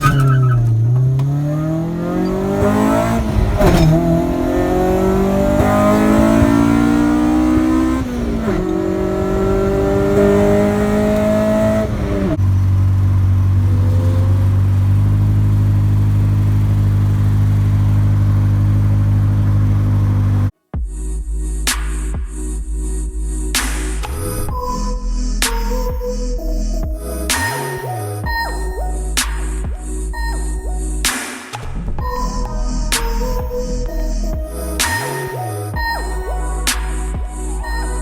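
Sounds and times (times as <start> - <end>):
car engine accelerating hard: 0.0 - 20.5.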